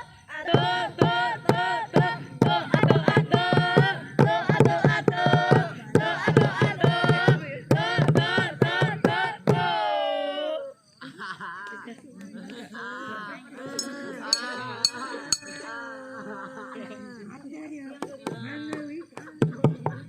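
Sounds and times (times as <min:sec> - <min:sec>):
person singing: 0:00.0 - 0:10.8, 0:13.6 - 0:17.1.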